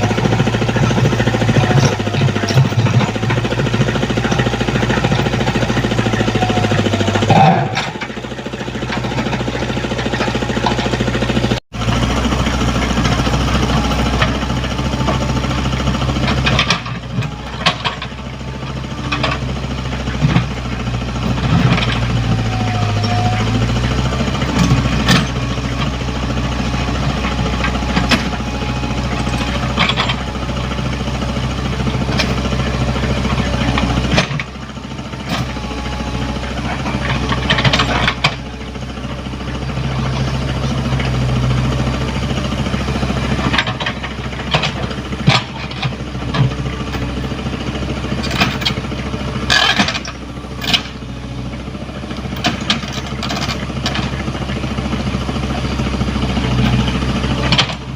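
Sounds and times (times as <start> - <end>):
excavator diesel engine running: 0.0 - 57.9
metal clanks and knocks: 13.0 - 18.2, 26.9 - 30.6, 36.4 - 38.4, 43.3 - 47.3, 49.5 - 51.0.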